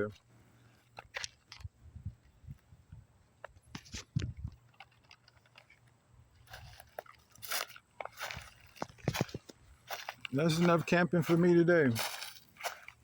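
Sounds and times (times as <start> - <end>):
footsteps on ground: 3.4 - 13.0.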